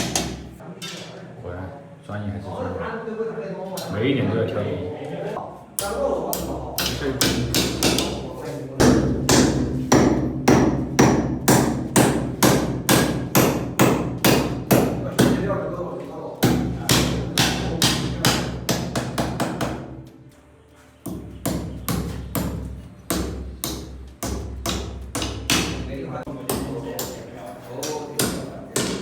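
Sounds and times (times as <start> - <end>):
hammer striking nails: 0.0 - 0.6, 5.8 - 8.2, 8.8 - 15.5, 16.4 - 20.0, 21.0 - 25.9, 26.5 - 29.0.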